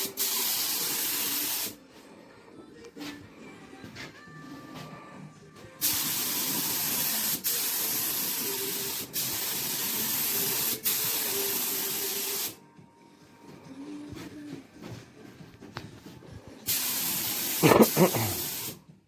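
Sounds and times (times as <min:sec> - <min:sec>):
spray paint hissing: 0:00.0 - 0:01.8, 0:05.8 - 0:12.6, 0:16.6 - 0:18.8.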